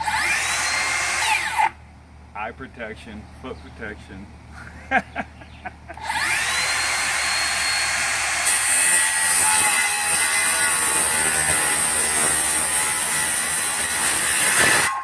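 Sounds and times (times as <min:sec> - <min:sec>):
circular saw whining: 0:00.0 - 0:01.8, 0:06.0 - 0:15.0
saw blade cutting wood: 0:06.0 - 0:15.0.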